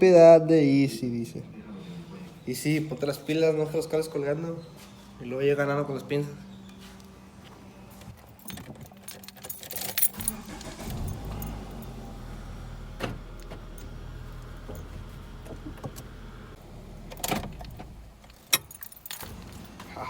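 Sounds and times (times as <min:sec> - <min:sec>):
keys jangling: 0:08.1 - 0:12.0, 0:13.4 - 0:15.4, 0:17.1 - 0:20.0
truck engine starting and idling: 0:10.1 - 0:20.0.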